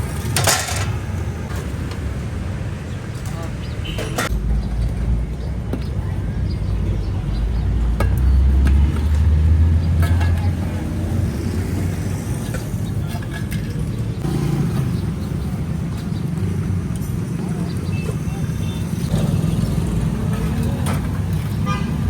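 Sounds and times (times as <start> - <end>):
clicks and clatter: 0.2 - 2.0.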